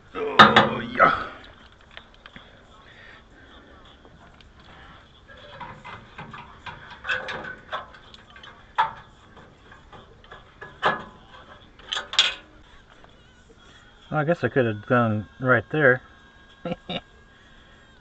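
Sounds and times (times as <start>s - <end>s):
metal tools clinking and knocking: 0.4s - 2.3s, 5.3s - 12.5s.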